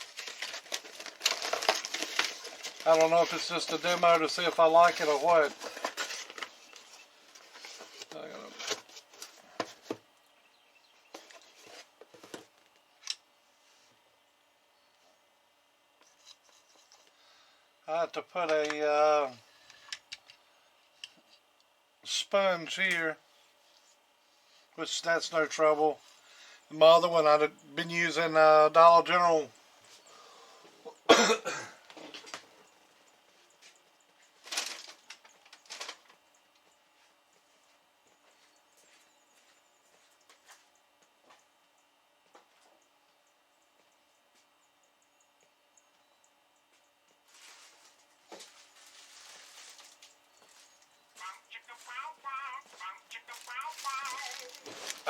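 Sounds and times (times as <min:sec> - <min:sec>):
rustling: 0:47.2 - 0:55.0.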